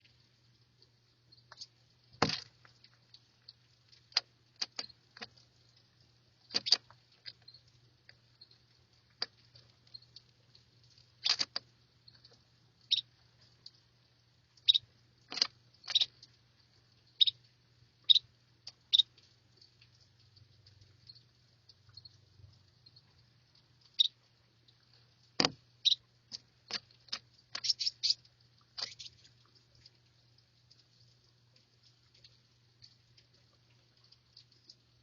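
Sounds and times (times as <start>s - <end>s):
faint steady hum: 0.0s - 35.0s
bird tapping and scrabbling: 4.0s - 5.5s, 6.4s - 7.5s, 9.1s - 12.4s, 14.6s - 16.4s, 25.2s - 28.2s.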